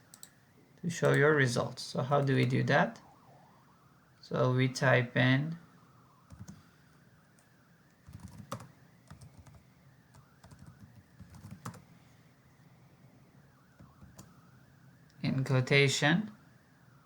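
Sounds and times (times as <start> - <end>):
typing on computer keyboard: 6.3 - 6.6, 8.0 - 11.8, 13.8 - 14.3.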